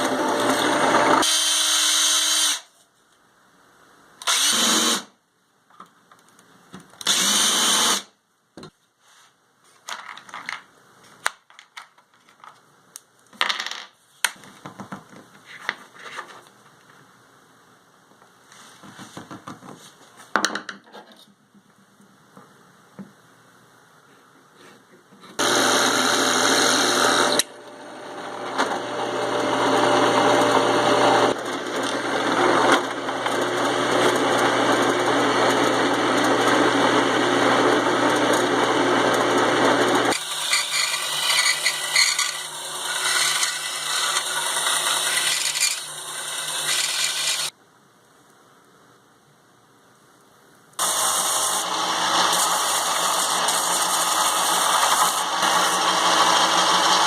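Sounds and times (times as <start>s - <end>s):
power tool cutting plywood: 0.0s - 2.6s, 25.4s - 47.5s, 50.8s - 57.0s.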